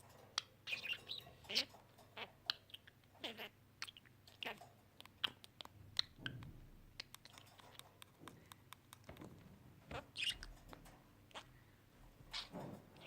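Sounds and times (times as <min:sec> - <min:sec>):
budgerigar clicks and chirps: 0:00.4 - 0:01.7, 0:02.5 - 0:06.4, 0:10.0 - 0:10.5.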